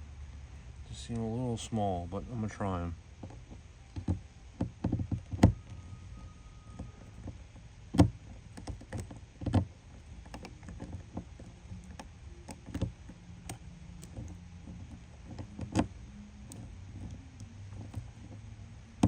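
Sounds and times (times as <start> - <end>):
rivet tool clicks and knocks: 6.8 - 19.0.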